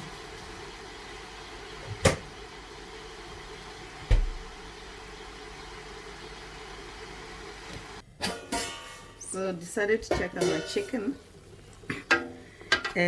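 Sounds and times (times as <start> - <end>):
mechanical hum: 0.0 - 12.8
heavy thump: 4.0 - 4.5.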